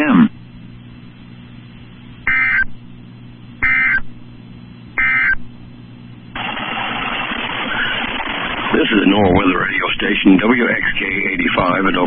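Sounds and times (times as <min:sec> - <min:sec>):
steady radio hiss: 0:00.0 - 0:12.0
shrill warbling data bursts: 0:02.3 - 0:02.7, 0:03.6 - 0:04.0, 0:05.0 - 0:05.4.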